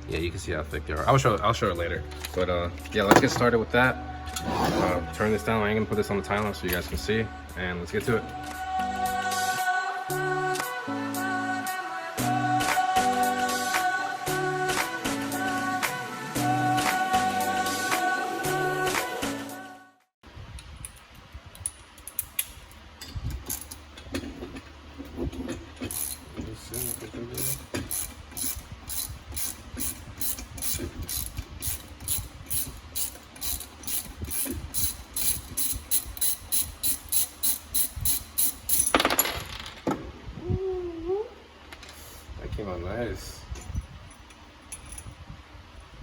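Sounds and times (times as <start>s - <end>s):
short scraping noise: 4.4s - 5.1s
ratchet wrench clicking: 25.8s - 26.2s, 26.8s - 38.9s.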